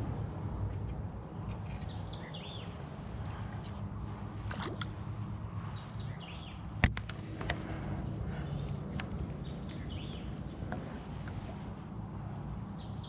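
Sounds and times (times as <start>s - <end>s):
wind rumble on microphone: 0.0s - 13.0s
bird chirps: 1.8s - 2.8s, 9.4s - 10.3s.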